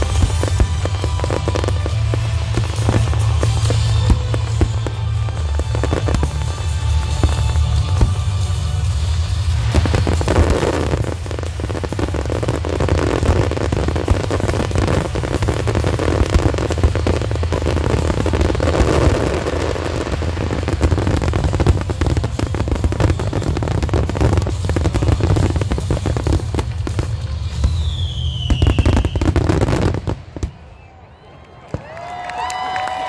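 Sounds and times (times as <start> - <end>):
fireworks bangs and crackle: 0.0 - 31.0
falling whistle: 27.7 - 29.4.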